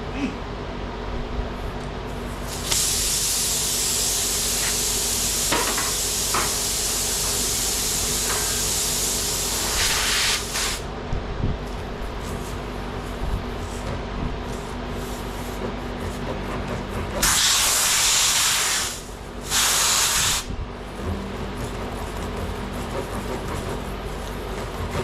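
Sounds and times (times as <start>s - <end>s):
pressurized gas hissing: 2.4s - 10.8s, 17.2s - 20.5s.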